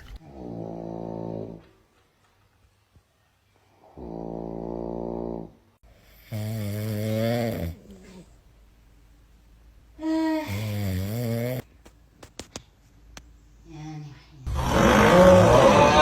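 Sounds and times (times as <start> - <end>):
person snoring: 3.9 - 8.3, 10.0 - 11.7, 14.5 - 16.0.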